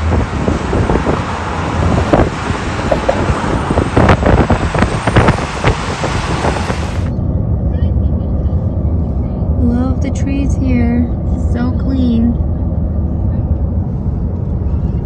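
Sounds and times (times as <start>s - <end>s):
wind buffeting microphone: 0.0s - 7.6s
vehicle road noise rumble: 0.0s - 15.0s.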